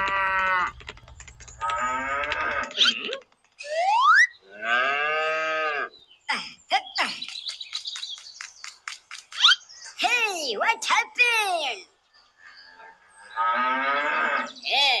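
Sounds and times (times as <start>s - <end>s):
quick bird chirps: 0.6s - 4.4s, 6.7s - 10.0s.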